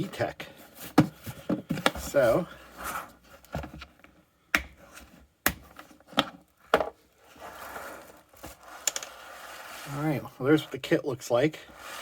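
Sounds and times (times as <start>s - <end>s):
soft rubbing: 7.2s - 11.0s, 11.6s - 12.0s.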